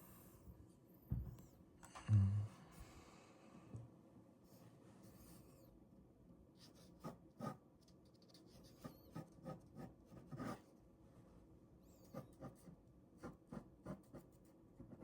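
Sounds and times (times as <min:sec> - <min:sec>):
pen scratching on paper: 0:06.6 - 0:07.6, 0:08.3 - 0:10.7, 0:12.1 - 0:15.0.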